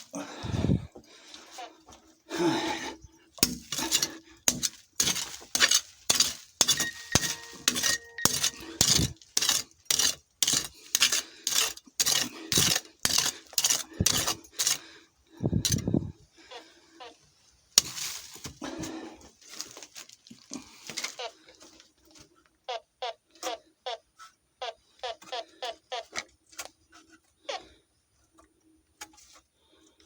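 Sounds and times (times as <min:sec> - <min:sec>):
pickaxe striking rubble: 0:03.4 - 0:14.8.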